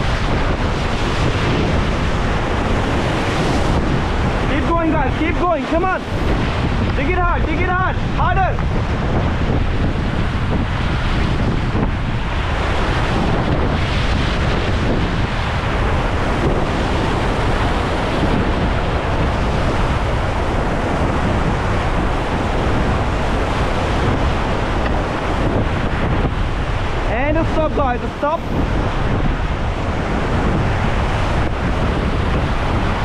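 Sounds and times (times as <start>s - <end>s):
rushing river rapids: 0.0s - 9.1s, 21.6s - 33.0s
wind buffeting microphone: 0.0s - 33.0s.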